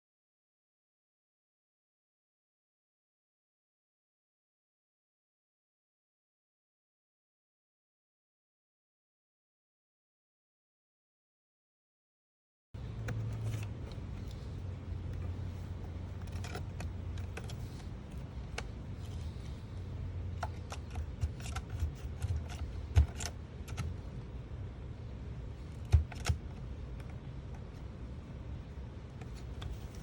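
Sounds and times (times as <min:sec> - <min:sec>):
low steady hum: 0:12.8 - 0:30.0.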